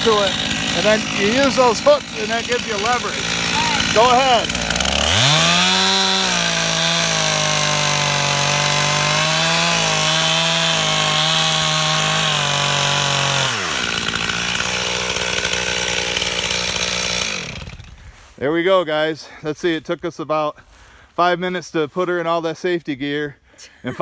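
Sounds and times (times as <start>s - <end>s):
chainsaw cutting into stump: 0.0s - 18.4s.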